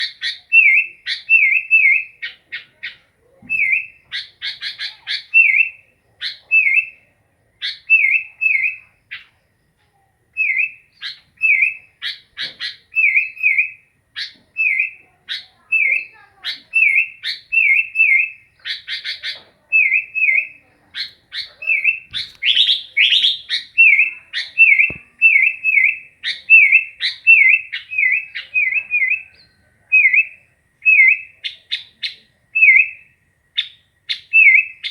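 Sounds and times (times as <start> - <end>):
bird fast chattering: 10.4 - 33.0
bird whistled notes: 19.0 - 34.9.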